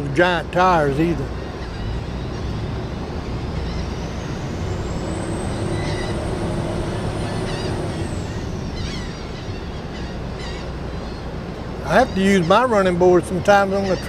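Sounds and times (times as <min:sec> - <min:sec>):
ship engines rumbling: 0:00.0 - 0:14.0
high whine: 0:00.5 - 0:10.8.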